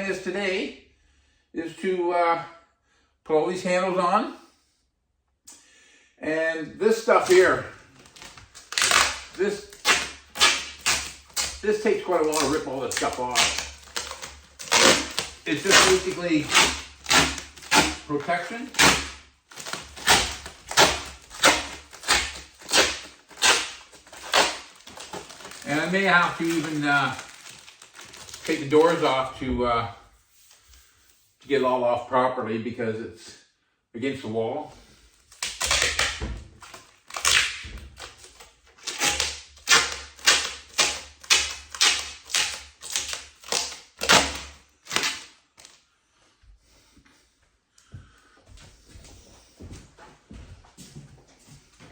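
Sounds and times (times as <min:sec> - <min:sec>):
plastic film tearing: 0:07.0 - 0:29.3, 0:35.3 - 0:45.8.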